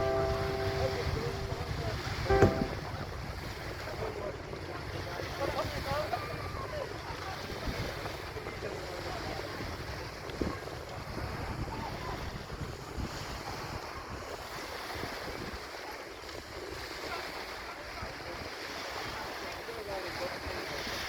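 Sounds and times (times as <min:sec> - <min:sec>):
sea water rushing: 0:00.0 - 0:03.2
brief knock: 0:02.3 - 0:02.9.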